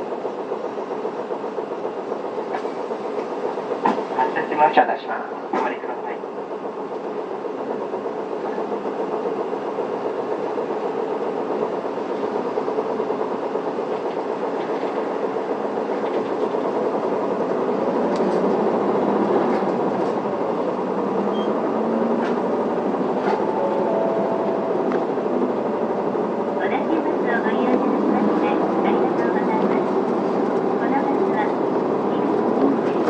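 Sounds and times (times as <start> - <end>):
bus engine and road rumble: 0.0 - 33.0.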